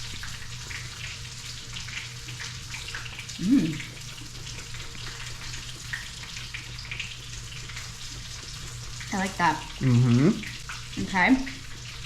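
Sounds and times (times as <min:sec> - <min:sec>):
hot oil sizzling: 0:00.0 - 0:12.0
low steady hum: 0:03.2 - 0:04.4
person humming mmm: 0:03.4 - 0:04.0, 0:09.8 - 0:10.5.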